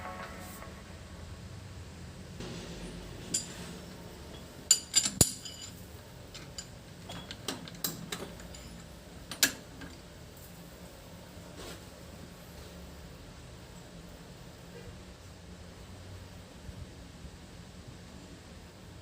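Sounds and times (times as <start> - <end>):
metal tools clinking: 3.3 - 3.7, 4.3 - 9.6.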